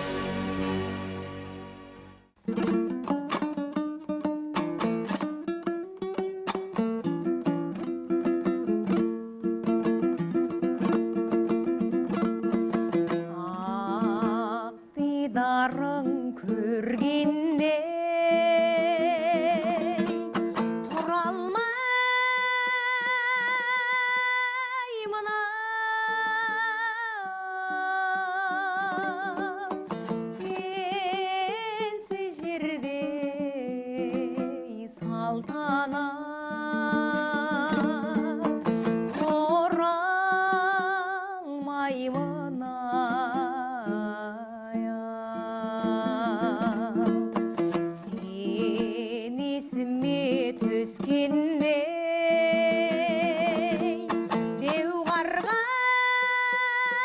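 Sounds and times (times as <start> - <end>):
plucked string instrument: 0.0 - 57.0
person singing with vibrato: 13.3 - 57.0.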